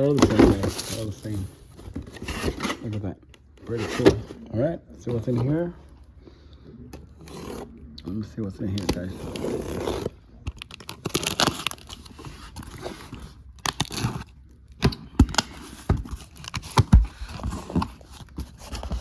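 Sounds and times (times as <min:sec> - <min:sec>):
packaging crinkling and tearing: 0:08.6 - 0:14.3.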